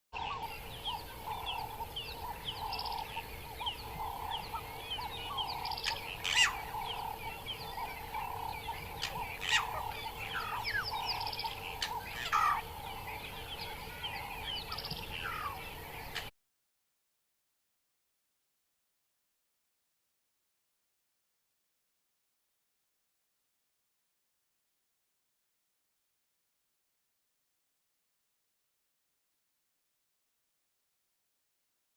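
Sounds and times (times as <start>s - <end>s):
birds chirping and trilling: 0.2s - 16.3s
faint steady hum: 0.2s - 16.3s
sharp bird calls: 0.2s - 16.3s.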